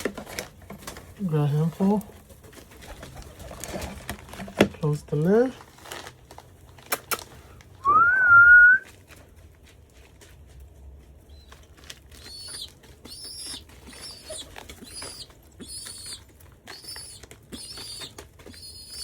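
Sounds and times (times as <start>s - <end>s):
young pigeon squeaking: 11.3s - 19.0s.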